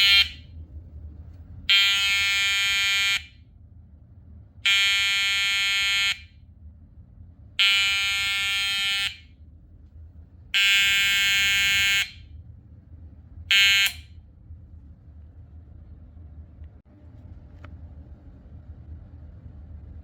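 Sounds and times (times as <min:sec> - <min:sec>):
buzzy fire alarm horn blasts: 0:00.0 - 0:00.5, 0:01.7 - 0:03.5, 0:04.6 - 0:06.4, 0:07.6 - 0:09.4, 0:10.5 - 0:12.4, 0:13.5 - 0:14.2.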